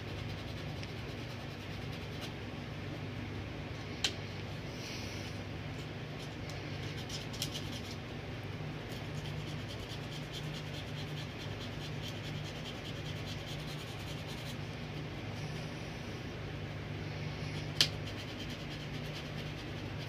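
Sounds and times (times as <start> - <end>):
steady low hum: 0.0 - 20.0
sandpaper scratching circuit board: 9.0 - 14.6, 18.0 - 20.0.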